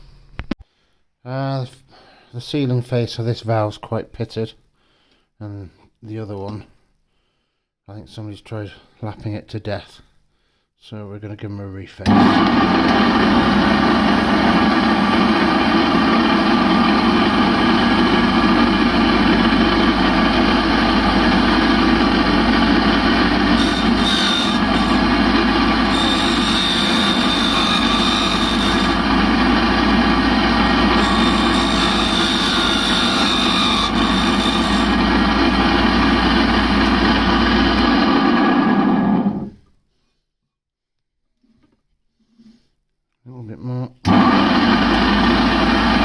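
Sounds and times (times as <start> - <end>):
grinding machine running: 12.1 - 39.5, 44.1 - 46.0
high grinding tone: 12.1 - 39.6.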